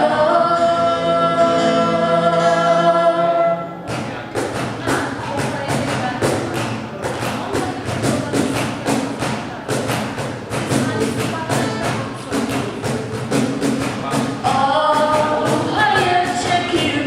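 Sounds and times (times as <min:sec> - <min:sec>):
song with thumping percussion: 0:03.7 - 0:17.0.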